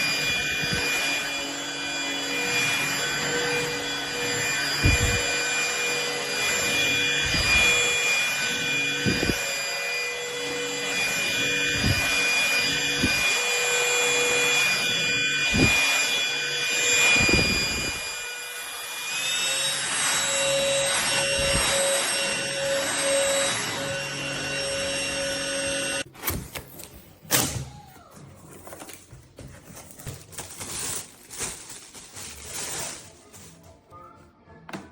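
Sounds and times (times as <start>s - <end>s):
vacuum cleaner motor whine: 0.0s - 26.4s.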